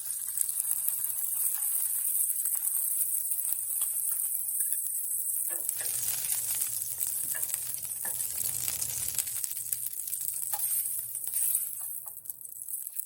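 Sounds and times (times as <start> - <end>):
chicken sizzling in frying pan: 0.0 - 13.0.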